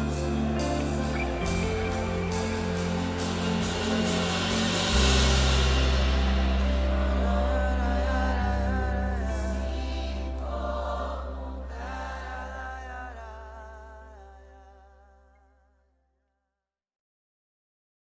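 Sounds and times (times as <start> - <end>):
voices singing with vibrato: 0.0 - 14.2
low bass note: 0.0 - 15.0.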